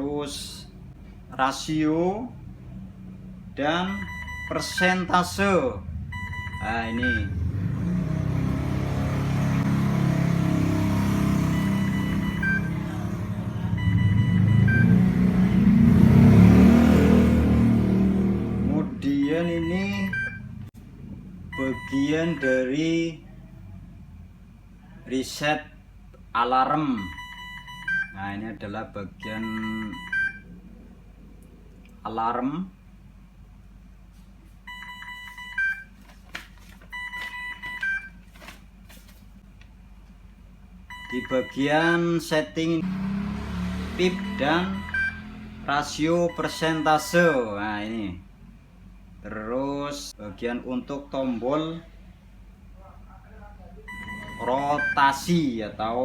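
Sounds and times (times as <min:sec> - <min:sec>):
ventilator alarm tone: 0:03.9 - 0:05.1, 0:05.9 - 0:07.6, 0:08.7 - 0:15.2, 0:21.4 - 0:22.7, 0:26.9 - 0:28.2, 0:29.3 - 0:30.5, 0:34.7 - 0:36.0, 0:40.9 - 0:42.0, 0:44.0 - 0:45.5, 0:46.3 - 0:47.4, 0:53.9 - 0:55.2.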